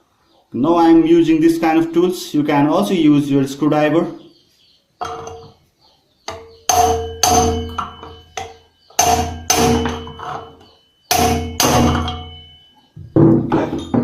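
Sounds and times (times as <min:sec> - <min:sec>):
hammer blows ringing on metal: 0:06.3 - 0:14.0.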